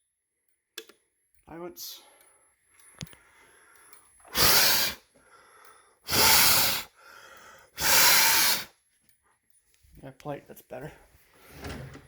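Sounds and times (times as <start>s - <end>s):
faint breathing: 1.9s - 8.7s
hard blows of breath: 4.3s - 8.7s.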